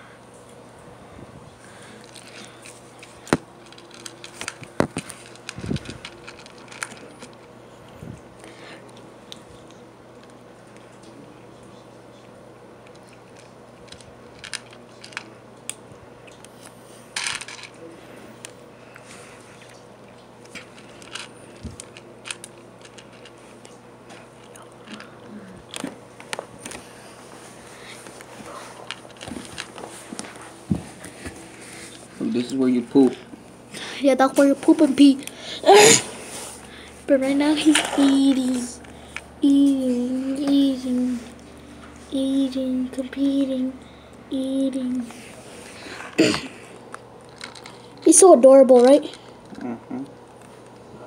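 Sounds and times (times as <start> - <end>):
kitten digging in cat litter: 1.7 - 11.1
kitten chewing dry kibble: 1.8 - 11.1, 18.4 - 26.8, 46.7 - 48.0.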